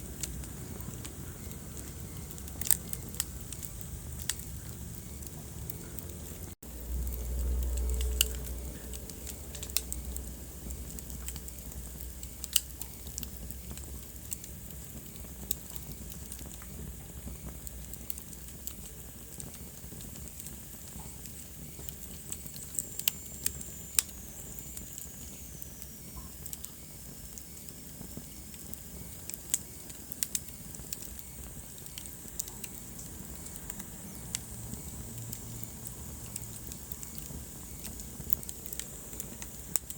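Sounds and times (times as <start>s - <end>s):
low rumble: 0.0s - 12.2s
soft steady hiss: 0.0s - 39.9s
wood fire crackling and popping: 0.0s - 39.9s.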